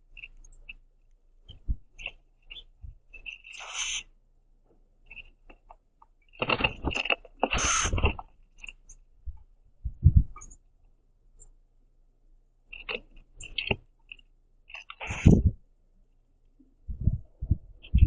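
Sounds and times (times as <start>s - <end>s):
birds giving high chip notes: 1.5s - 4.1s
birds fluttering and scuffling on wood: 5.0s - 9.0s.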